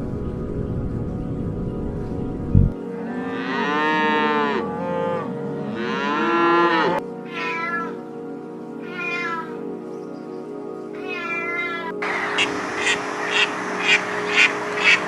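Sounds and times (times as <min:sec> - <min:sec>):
background music: 0:00.0 - 0:15.0
drawn-out animal calls: 0:07.3 - 0:08.0, 0:08.8 - 0:09.6, 0:11.0 - 0:11.9.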